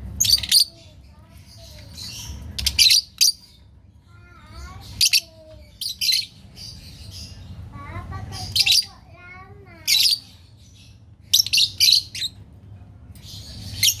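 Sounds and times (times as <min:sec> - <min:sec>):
lovebirds shrill chirps: 0:00.2 - 0:03.7, 0:09.8 - 0:12.4, 0:13.2 - 0:14.0.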